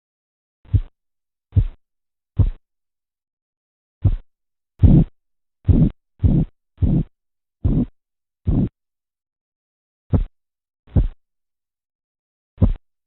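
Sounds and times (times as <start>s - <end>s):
low pulse thumps: 0.7s - 0.9s, 2.4s - 2.6s, 4.8s - 5.1s, 5.7s - 7.9s, 8.5s - 8.7s.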